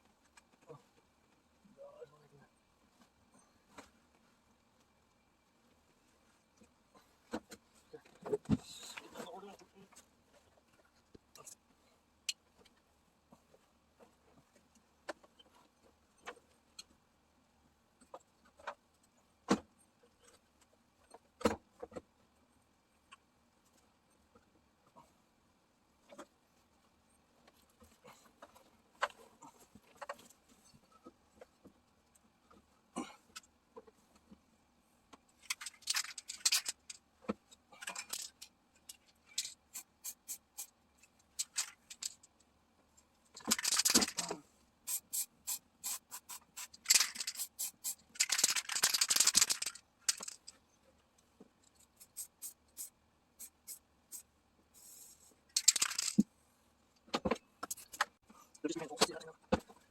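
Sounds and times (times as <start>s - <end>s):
clicks and scrapes of handling: 35.2s - 42.4s, 45.9s - 50.7s, 51.4s - 56.3s
spray can rattling: 39.4s - 40.7s, 43.5s - 44.2s, 44.9s - 50.5s, 52.0s - 54.2s, 55.6s - 56.2s
spray can hissing: 39.7s - 40.7s, 44.9s - 48.0s, 52.0s - 54.2s.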